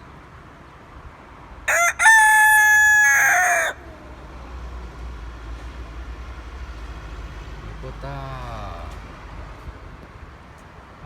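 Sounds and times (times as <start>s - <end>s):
rooster crowing: 1.7s - 4.2s.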